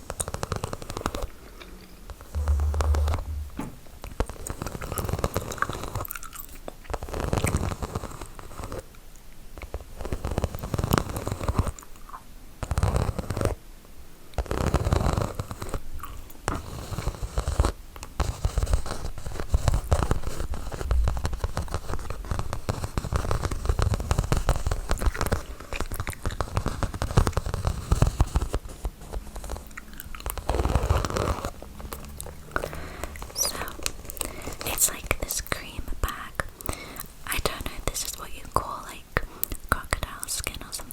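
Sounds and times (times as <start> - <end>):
gum chewing mouth clicks: 23.2 - 27.8, 29.5 - 40.9.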